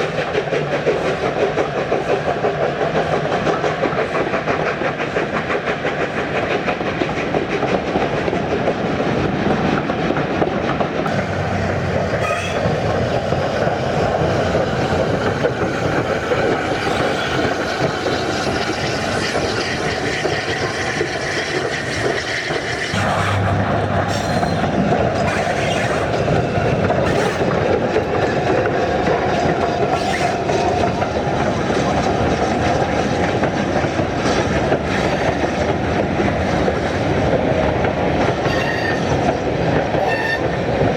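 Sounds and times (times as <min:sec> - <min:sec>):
steam train running on rails: 0:00.0 - 0:40.9.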